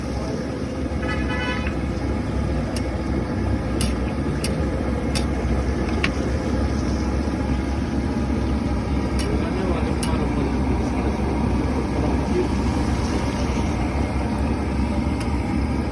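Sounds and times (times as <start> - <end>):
traffic rumble: 0.0 - 15.9
vehicle horn toot: 1.0 - 1.8.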